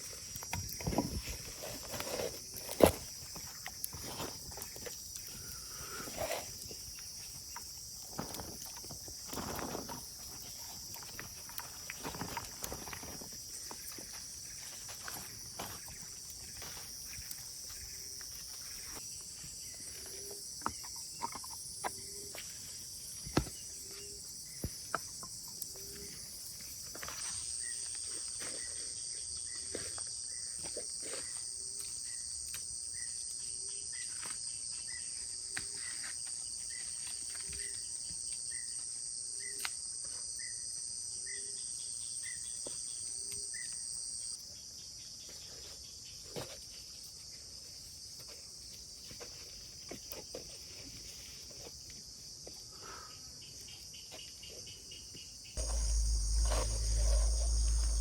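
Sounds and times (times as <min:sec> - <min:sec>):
high-pitched insect: 0:53.6 - 0:58.0
insects shrilling: 0:55.6 - 0:58.0.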